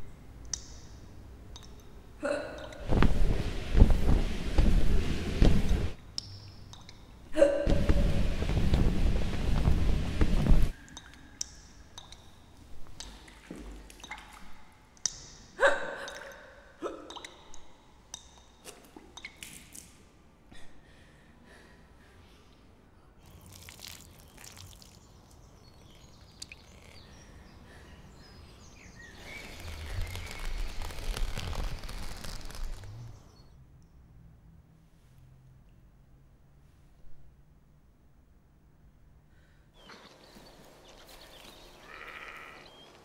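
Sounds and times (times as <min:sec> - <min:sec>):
person hiccuping: 0:02.2 - 0:02.8.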